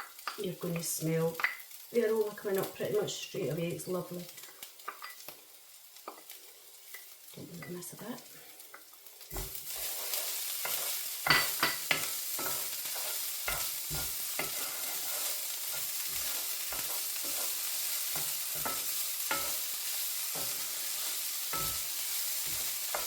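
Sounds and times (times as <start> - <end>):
food sizzling in oil: 0.0 - 23.0
utensil scraping and knocking pan: 9.3 - 19.6.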